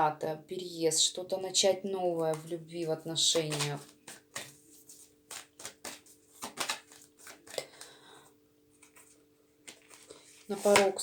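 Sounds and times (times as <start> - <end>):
cards being laid on a table: 3.4 - 7.9, 8.8 - 11.0.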